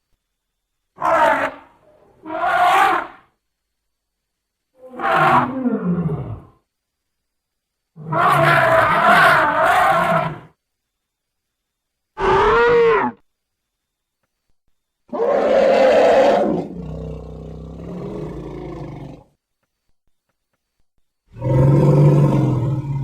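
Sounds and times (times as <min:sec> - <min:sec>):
creature roars: 0:12.2 - 0:13.2, 0:15.2 - 0:19.2, 0:21.3 - 0:23.0.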